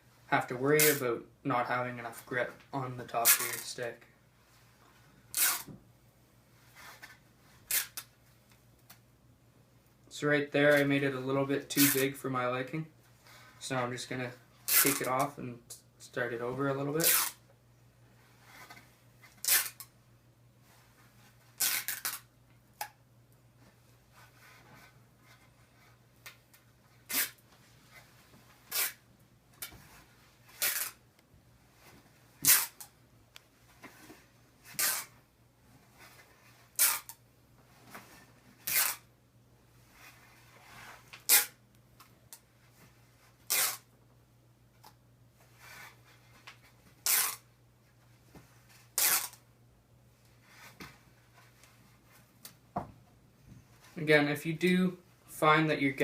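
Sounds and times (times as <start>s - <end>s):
tape ripping: 5.3s - 5.7s, 7.7s - 8.1s, 11.8s - 12.0s, 14.7s - 15.3s, 17.0s - 17.4s, 19.3s - 19.9s, 21.6s - 22.3s, 27.1s - 27.4s, 28.7s - 29.0s, 30.5s - 31.0s, 32.4s - 32.9s, 34.7s - 35.1s, 36.7s - 37.2s, 38.6s - 39.1s, 41.1s - 41.6s, 43.4s - 43.9s, 47.0s - 47.5s, 48.9s - 49.4s.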